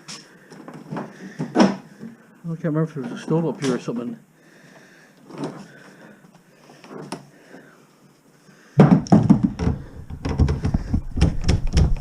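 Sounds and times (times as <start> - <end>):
objects knocking and clattering: 8.8 - 12.0.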